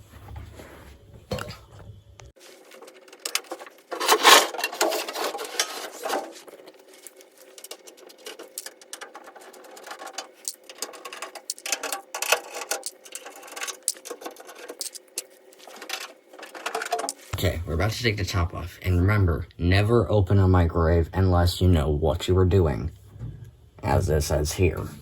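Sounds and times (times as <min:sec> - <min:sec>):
clicking and rattling of sheet metal: 0:02.7 - 0:06.7, 0:07.4 - 0:17.2.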